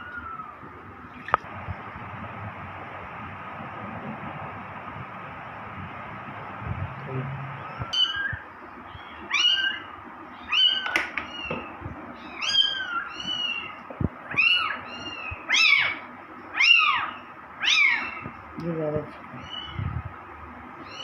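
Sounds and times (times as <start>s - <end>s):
kittens mewing: 7.3s - 8.5s, 9.1s - 18.4s.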